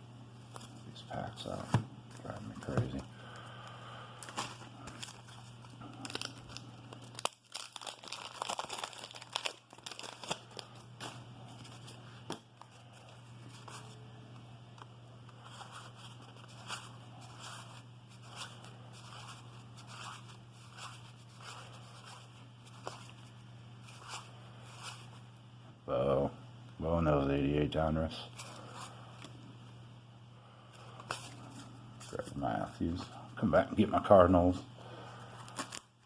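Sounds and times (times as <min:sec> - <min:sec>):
low steady hum: 0:00.0 - 0:36.0
wax paper pack tearing: 0:04.2 - 0:11.2.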